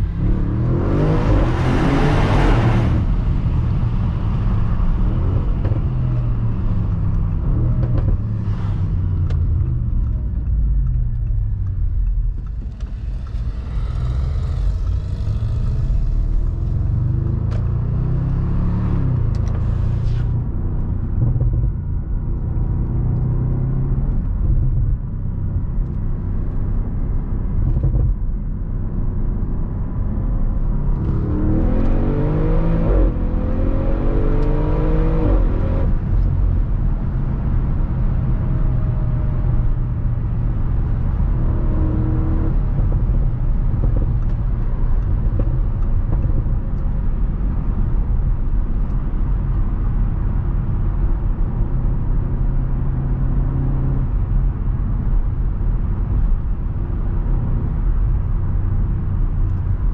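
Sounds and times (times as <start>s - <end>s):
low engine drone: 0.0s - 20.5s
car engine accelerating: 0.0s - 28.2s, 29.8s - 59.9s
road noise: 0.0s - 59.9s.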